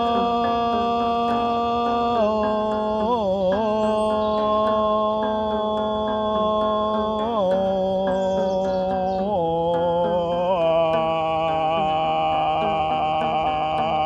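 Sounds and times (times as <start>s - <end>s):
light ticking: 0.0s - 14.0s
slow chant-like music: 0.0s - 14.0s.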